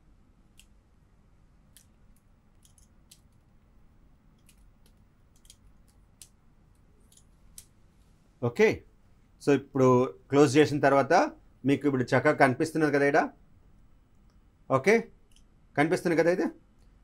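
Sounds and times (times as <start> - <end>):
faint sharp plastic clicks: 1.7 - 8.1, 15.3 - 15.5.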